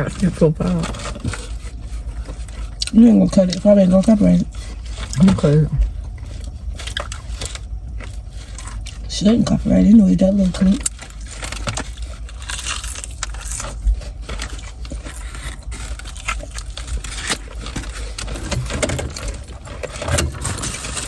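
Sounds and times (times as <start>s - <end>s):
steady low rumble: 0.0s - 21.0s
small clicks and rustles: 10.6s - 21.0s.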